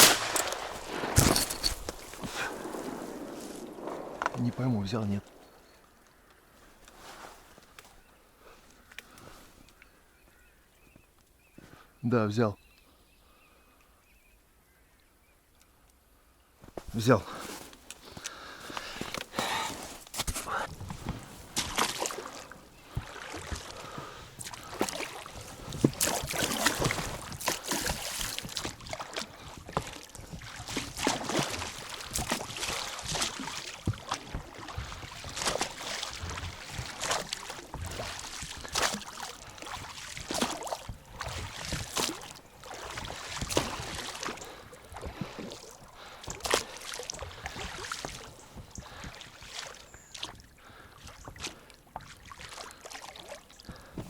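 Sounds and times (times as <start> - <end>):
paddle splashing water: 0.0 - 6.0, 19.0 - 53.9.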